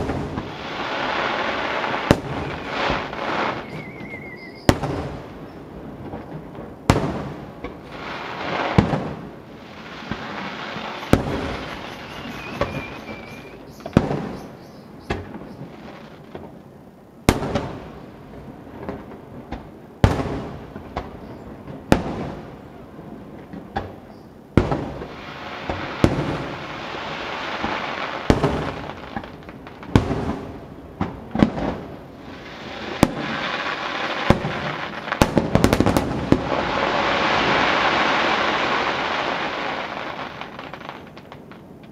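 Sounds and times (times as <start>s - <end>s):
fireworks booming: 0.0s - 16.6s, 17.2s - 41.9s
fireworks crackling: 0.0s - 41.9s
short high whistle: 3.6s - 4.7s, 11.0s - 14.4s.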